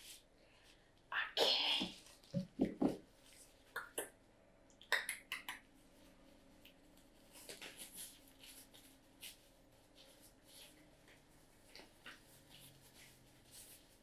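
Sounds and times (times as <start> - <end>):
soft rustle: 5.7 - 14.0.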